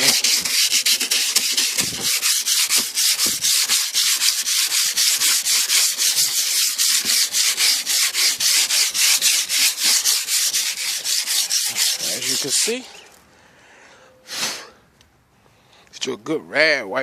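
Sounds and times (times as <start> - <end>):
sandpaper rubbing on car paint: 0.0 - 13.1.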